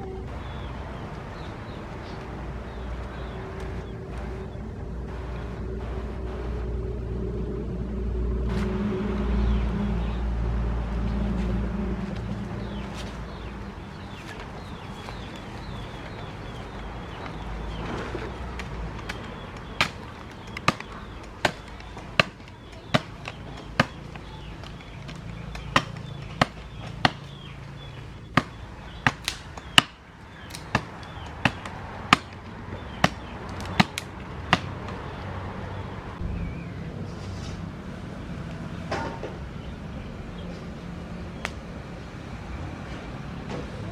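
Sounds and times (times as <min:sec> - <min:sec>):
tool chopping blows: 0:12.6 - 0:35.2.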